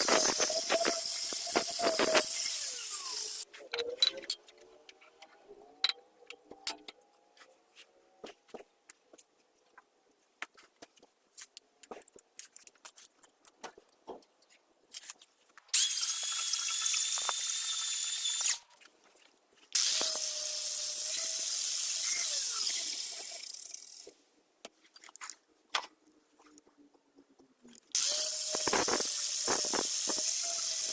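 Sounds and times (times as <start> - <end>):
high-pitched power tool running: 0.0 - 3.4, 19.8 - 24.0, 28.0 - 30.9.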